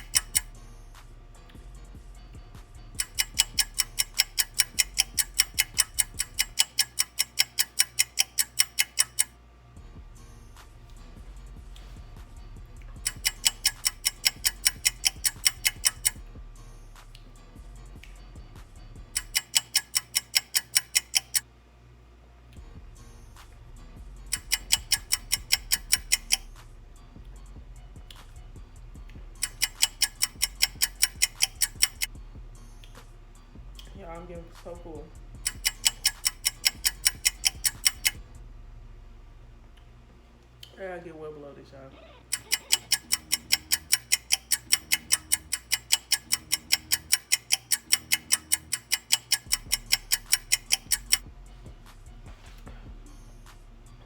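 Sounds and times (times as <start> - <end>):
fast even ticking: 0.0 - 0.6, 1.9 - 9.4, 11.4 - 16.4, 17.0 - 21.4, 24.2 - 26.6, 28.9 - 32.2, 33.7 - 38.4, 42.3 - 51.3
low steady music bed: 0.0 - 42.0, 42.9 - 54.0
low steady hum: 9.2 - 13.2, 26.4 - 29.4, 38.1 - 42.3.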